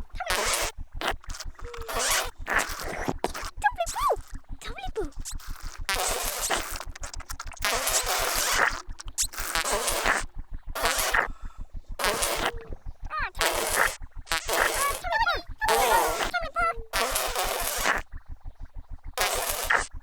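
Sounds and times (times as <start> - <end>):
squeaky wobbling character noises: 0.0 - 11.3, 12.0 - 18.0, 19.2 - 19.9
cartoon drinking hissing: 0.0 - 18.0, 19.2 - 19.9.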